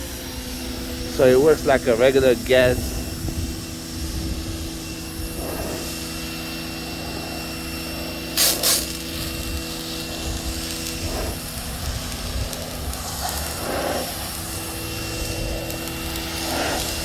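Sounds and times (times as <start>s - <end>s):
pressure washer humming: 0.0s - 17.0s
short loud hisses: 8.4s - 9.0s.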